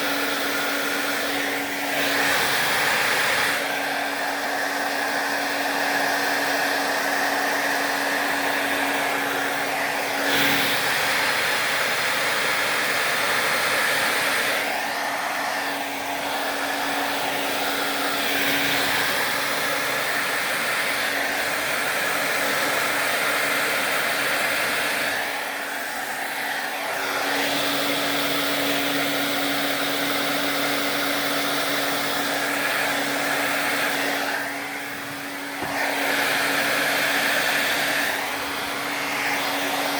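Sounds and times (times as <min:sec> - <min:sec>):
hair dryer blowing: 0:00.0 - 0:39.9.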